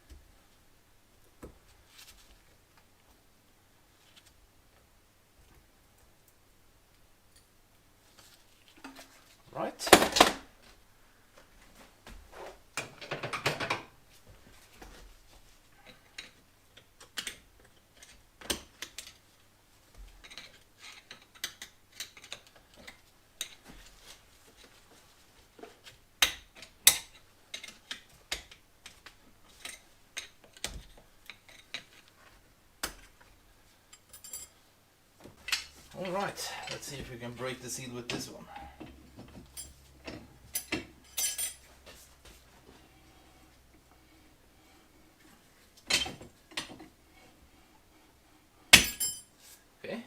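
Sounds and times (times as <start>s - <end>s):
metal tools clinking: 33.9s - 34.6s, 39.5s - 41.7s, 48.7s - 49.3s.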